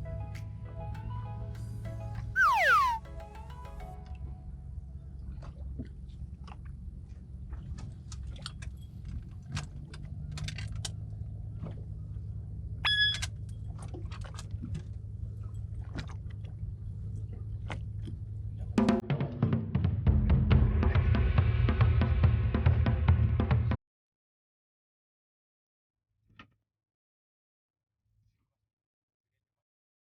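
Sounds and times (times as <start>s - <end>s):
short high beep: 2.4s - 3.0s.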